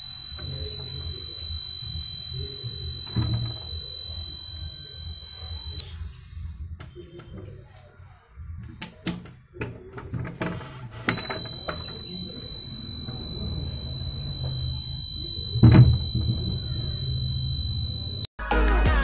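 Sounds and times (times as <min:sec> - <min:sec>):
high-pitched alarm buzzer: 0:00.0 - 0:05.8, 0:11.1 - 0:18.3.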